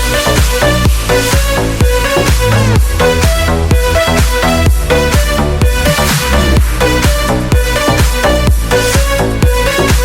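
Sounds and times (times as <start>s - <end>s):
electronic dance music: 0.0s - 10.0s
kick drum: 0.0s - 10.0s
sustained synth notes: 1.6s - 6.8s.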